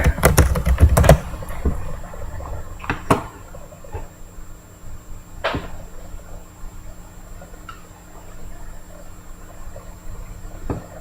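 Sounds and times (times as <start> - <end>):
sharp clicks and knocks: 0.0 - 1.8
low electrical hum: 0.0 - 11.0.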